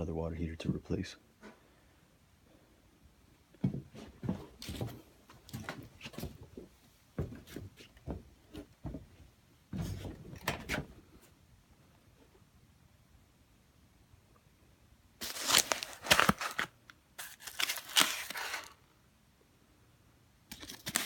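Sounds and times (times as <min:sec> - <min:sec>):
knocks and thumps of handling: 0:03.6 - 0:11.0.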